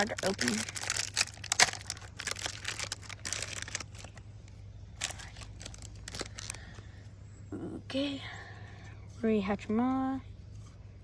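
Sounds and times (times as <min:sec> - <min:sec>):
wrapper crinkling and tearing: 0:00.0 - 0:06.7.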